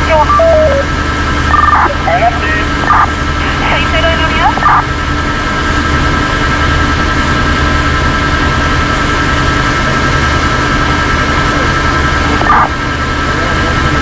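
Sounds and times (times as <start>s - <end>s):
short radio tone: 0.0s - 0.9s, 1.5s - 4.9s, 12.3s - 12.8s
truck engine low drone: 0.0s - 14.0s.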